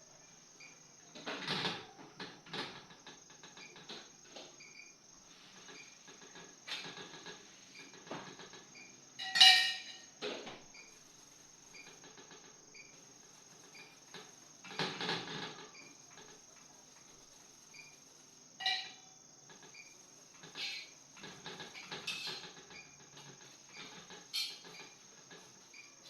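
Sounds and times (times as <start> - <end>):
crickets chirping: 0.0 - 26.0
cookware clattering: 9.2 - 10.0
metallic clinks of cookware: 9.2 - 10.0.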